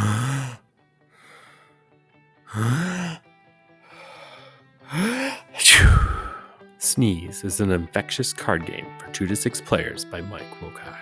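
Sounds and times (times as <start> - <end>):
person sneezing: 0.0 - 0.5, 4.9 - 6.4
quiet music: 1.4 - 11.0.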